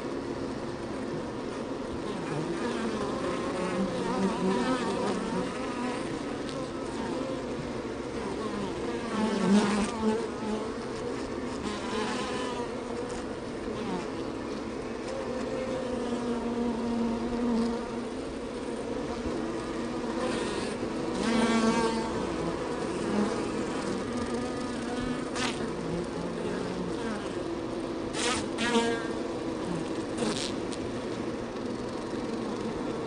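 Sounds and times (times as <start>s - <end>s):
bees buzzing around hive: 0.0s - 33.0s
single bee flying past: 15.0s - 33.0s.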